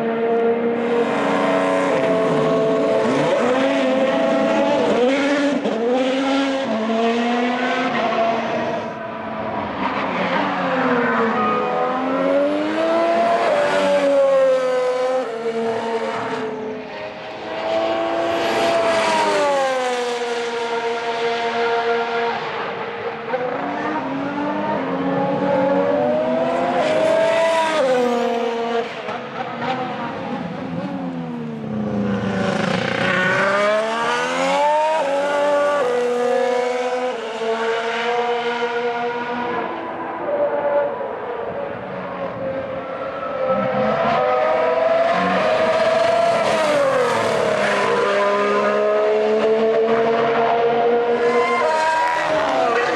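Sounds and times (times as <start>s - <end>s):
racing car engines at high revs: 0.0s - 52.9s.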